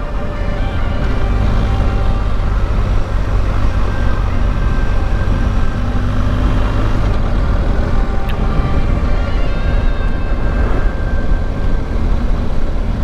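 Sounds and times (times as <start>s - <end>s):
motorcycle engine running: 0.0s - 13.0s
wind rumble on microphone: 0.0s - 13.0s.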